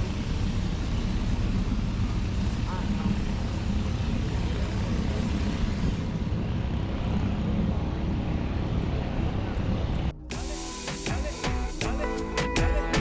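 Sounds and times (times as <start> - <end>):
even hiss: 10.3 - 13.0.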